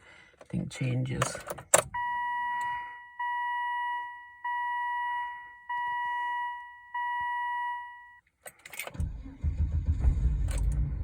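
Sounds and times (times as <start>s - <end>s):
dashboard warning chime: 1.9s - 8.2s.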